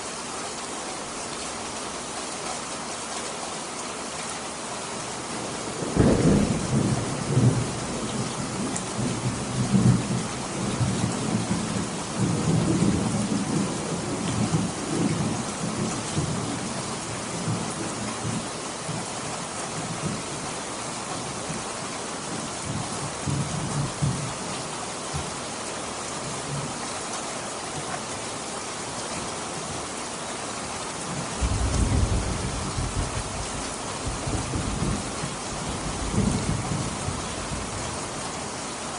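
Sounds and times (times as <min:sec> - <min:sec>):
steady rain: 0:00.0 - 0:38.9
rolling thunder: 0:05.8 - 0:13.7, 0:31.4 - 0:38.1.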